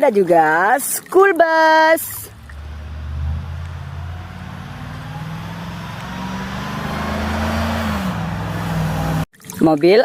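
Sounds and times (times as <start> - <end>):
vehicle engine humming: 2.0 - 9.3.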